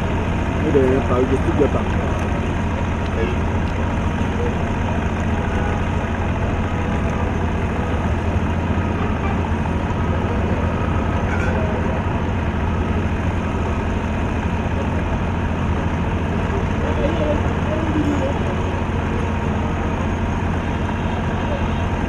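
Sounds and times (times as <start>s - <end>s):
engine idling: 0.0s - 22.0s.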